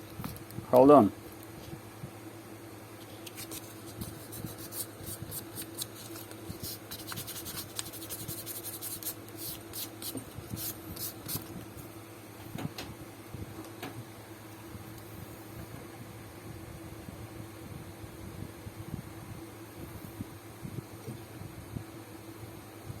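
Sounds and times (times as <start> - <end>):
sandpaper scratching leather: 3.4 - 11.5.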